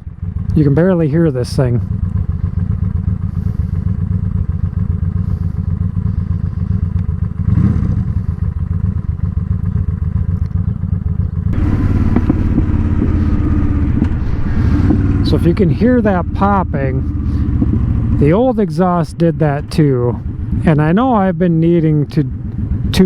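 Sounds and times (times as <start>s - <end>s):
motorcycle engine idling: 0.0s - 23.0s
exhaust pops: 11.5s - 19.6s
rushing noise: 11.6s - 18.3s.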